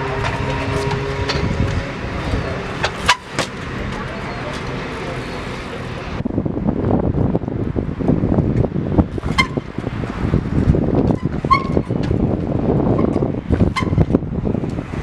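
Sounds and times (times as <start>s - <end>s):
wind buffeting microphone: 0.0s - 15.0s
short high squeaks: 11.1s - 12.0s, 13.0s - 14.0s.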